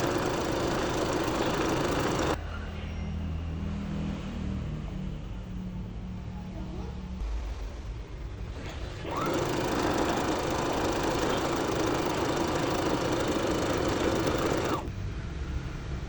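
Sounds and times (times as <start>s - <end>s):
electric sewing machine stitching: 0.0s - 2.4s, 9.1s - 14.9s.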